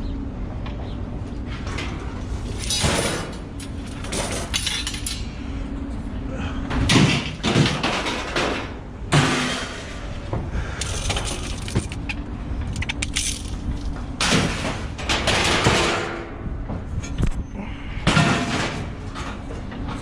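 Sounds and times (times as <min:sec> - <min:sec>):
scrap metal clattering and crashing: 0:01.6 - 0:05.2, 0:06.8 - 0:12.1, 0:12.7 - 0:16.4, 0:18.0 - 0:20.0.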